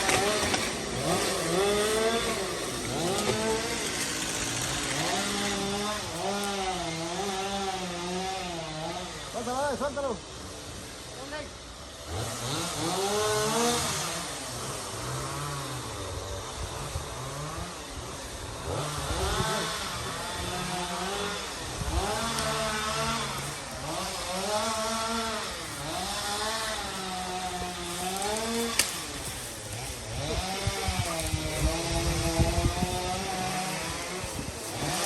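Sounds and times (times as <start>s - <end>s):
chainsaw revving while cutting: 0.0s - 35.0s.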